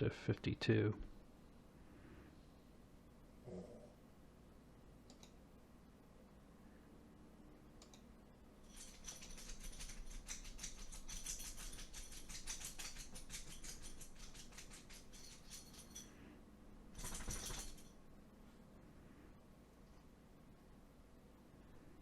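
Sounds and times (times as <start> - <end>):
rattle of small clicks: 8.7 - 16.1, 17.0 - 17.9.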